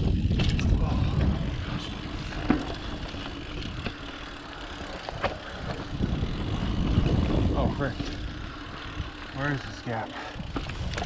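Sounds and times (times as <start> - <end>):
wind on microphone: 0.0 - 3.9, 5.6 - 8.4
bike tyres rumbling on dirt: 0.0 - 11.0
sharp knocks from bike: 0.2 - 0.7, 2.4 - 3.0.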